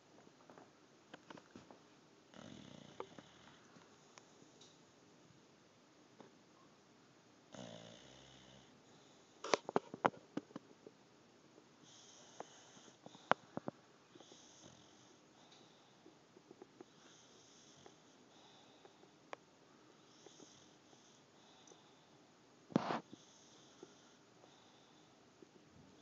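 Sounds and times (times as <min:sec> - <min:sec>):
dog snoring: 0:02.3 - 0:03.8, 0:07.5 - 0:09.6, 0:11.8 - 0:16.0, 0:16.8 - 0:19.0, 0:20.0 - 0:22.1, 0:22.7 - 0:25.1.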